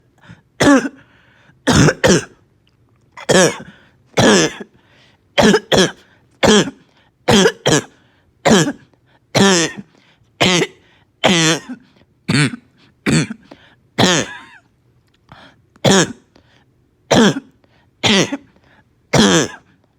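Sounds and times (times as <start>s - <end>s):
person barking cough: 0.6s - 1.0s, 1.6s - 2.4s, 3.2s - 4.7s, 5.4s - 14.7s, 15.8s - 16.3s, 17.1s - 19.8s.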